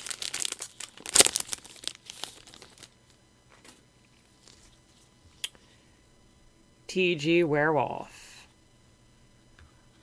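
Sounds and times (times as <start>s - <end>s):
foil wrapper tearing and crinkling: 0.0s - 3.0s.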